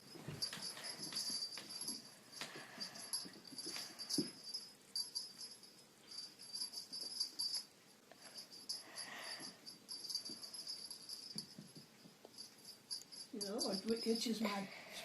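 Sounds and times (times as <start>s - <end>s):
soft ticks and scratches: 10.1s - 14.7s.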